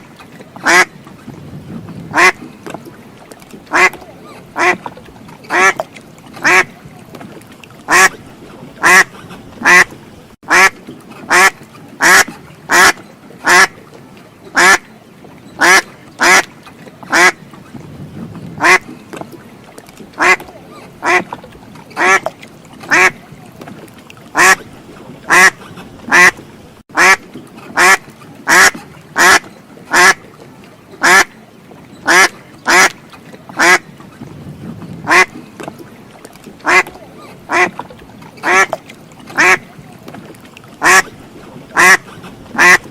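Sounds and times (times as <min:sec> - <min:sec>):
duck quacking: 0:00.6 - 0:00.9, 0:02.1 - 0:02.4, 0:03.7 - 0:04.0, 0:04.6 - 0:04.8, 0:05.5 - 0:05.8, 0:06.4 - 0:06.7, 0:07.9 - 0:08.2, 0:08.8 - 0:09.9, 0:10.5 - 0:10.7, 0:11.3 - 0:13.7, 0:14.6 - 0:14.8, 0:15.6 - 0:16.5, 0:17.1 - 0:17.4, 0:18.6 - 0:18.8, 0:20.2 - 0:20.4, 0:21.0 - 0:21.2, 0:22.0 - 0:22.3, 0:22.9 - 0:23.2, 0:24.4 - 0:24.6, 0:25.3 - 0:26.4, 0:27.0 - 0:27.2, 0:27.8 - 0:30.2, 0:31.0 - 0:31.3, 0:32.1 - 0:32.9, 0:33.6 - 0:33.8, 0:35.1 - 0:35.3, 0:36.6 - 0:37.7, 0:38.4 - 0:38.8, 0:39.4 - 0:39.7, 0:40.8 - 0:41.1, 0:41.8 - 0:42.0, 0:42.6 - 0:42.9.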